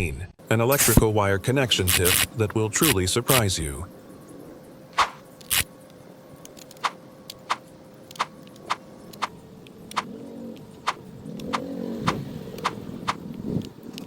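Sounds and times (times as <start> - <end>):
faint steady hum: 0.0 - 14.0
sharp clicks and ticks: 6.4 - 14.0.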